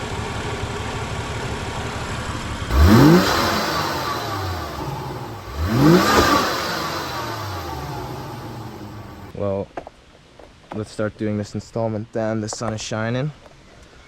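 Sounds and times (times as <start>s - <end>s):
car engine idling and revving: 0.0s - 9.3s.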